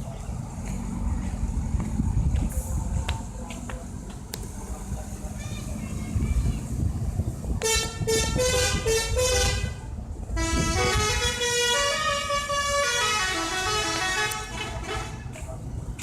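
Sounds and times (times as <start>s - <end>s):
low engine and street rumble: 0.0s - 16.0s
bus musical horn playing a tune: 7.6s - 15.3s.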